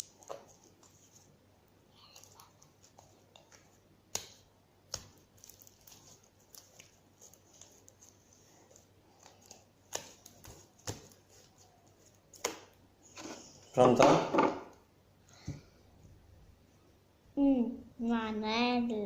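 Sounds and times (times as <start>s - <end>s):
slime sticky rustling: 0.0s - 12.8s.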